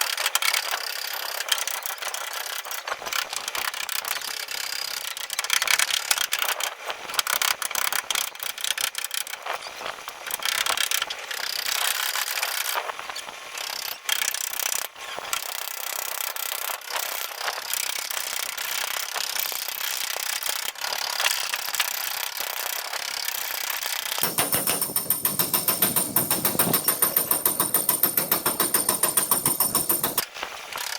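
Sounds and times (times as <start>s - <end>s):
quick mechanical rattle: 21.5s - 30.9s.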